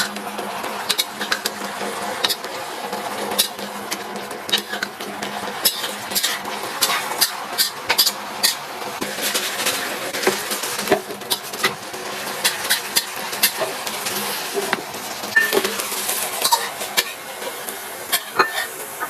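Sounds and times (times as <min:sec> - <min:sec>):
frying sizzle: 0:00.0 - 0:19.0
utensil scraping a pan: 0:00.8 - 0:18.8.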